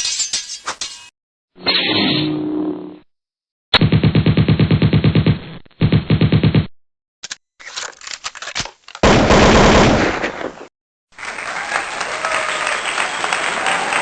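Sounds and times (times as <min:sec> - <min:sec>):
automatic gunfire burst: 0:09.0 - 0:10.2
gunshots: 0:09.0 - 0:10.6.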